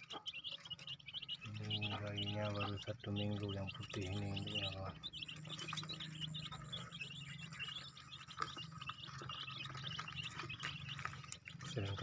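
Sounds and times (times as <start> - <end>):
chicks peeping: 0.0 - 12.0.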